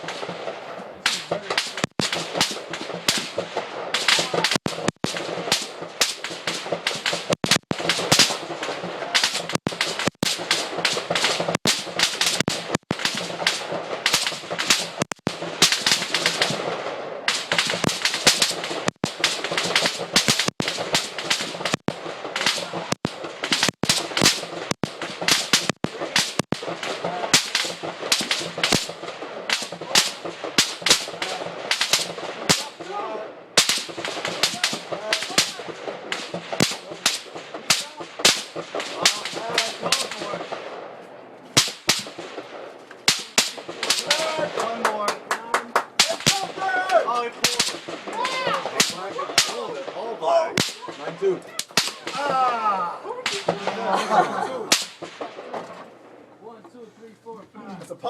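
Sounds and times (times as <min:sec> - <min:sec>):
rifle fire cracks: 0:00.0 - 0:52.5, 0:53.1 - 0:56.2.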